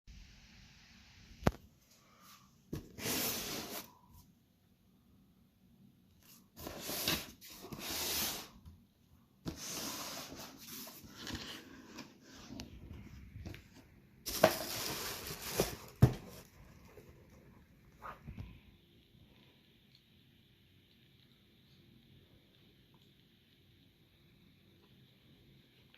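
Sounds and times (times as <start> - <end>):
cardboard and paper rustling: 9.5 - 18.4.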